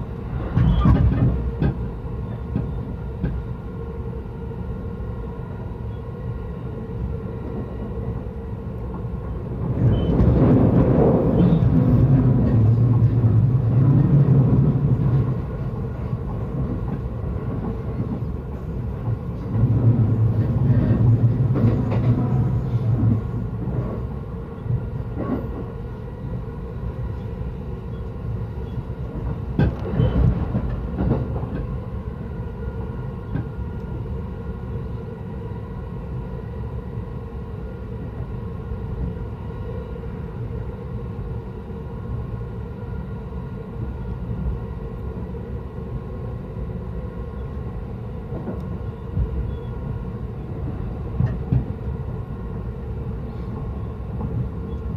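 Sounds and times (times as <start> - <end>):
train rumbling on track: 0.0 - 54.9
train wheel clicks: 29.6 - 31.7.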